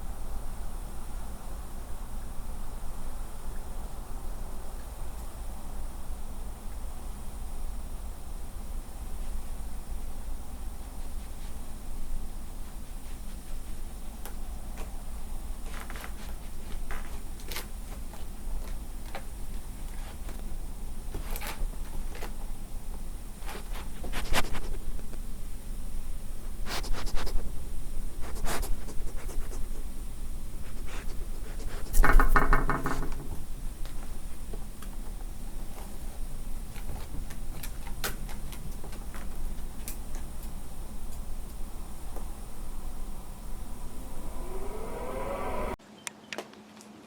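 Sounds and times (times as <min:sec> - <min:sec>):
scrapes and rubs: 0:23.4 - 0:24.9, 0:26.6 - 0:29.8, 0:30.6 - 0:33.2.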